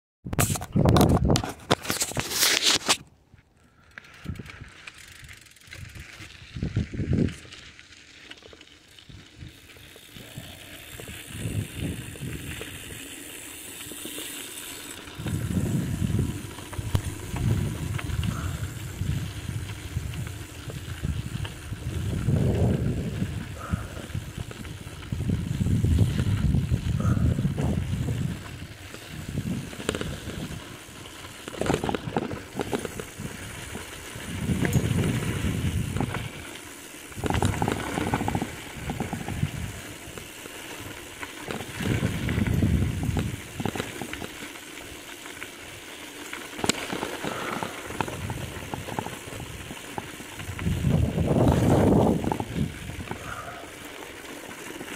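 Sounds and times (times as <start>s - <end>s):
bicycle tyres rolling on dirt: 0.4s - 54.9s
wind on microphone: 10.2s - 13.0s, 15.2s - 30.7s, 32.6s - 36.4s, 37.2s - 40.2s, 41.6s - 44.1s, 47.3s - 53.7s.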